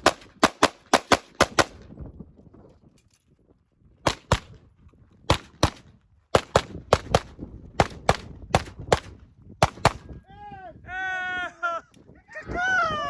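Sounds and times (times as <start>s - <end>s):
rapid pistol shots: 0.0s - 1.8s, 4.0s - 4.5s, 5.3s - 10.1s.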